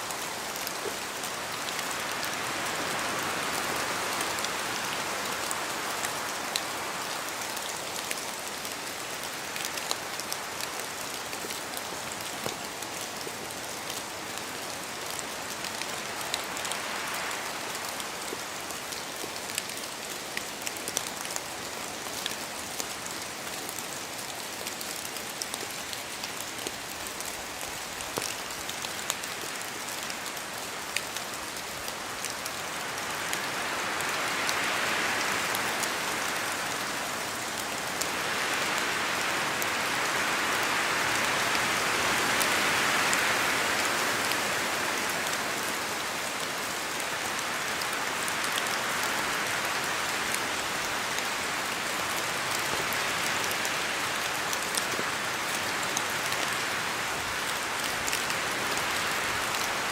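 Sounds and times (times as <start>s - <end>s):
rain dripping on leaves: 0.0s - 59.9s.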